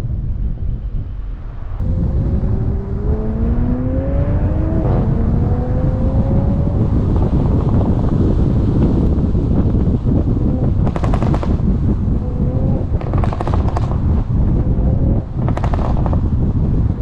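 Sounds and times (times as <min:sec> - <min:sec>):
wind rumble: 0:00.0 - 0:17.0
car engine accelerating hard: 0:01.8 - 0:09.1
exhaust pops crackling: 0:10.8 - 0:11.8, 0:13.0 - 0:14.3, 0:15.4 - 0:16.4.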